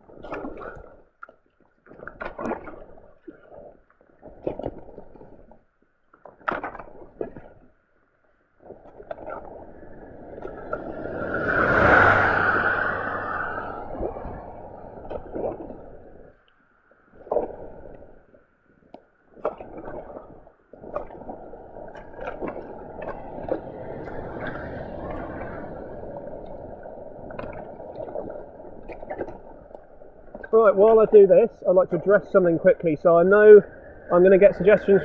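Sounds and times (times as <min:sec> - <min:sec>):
water rushing down a drain: 0:08.7 - 0:16.3, 0:19.4 - 0:35.0.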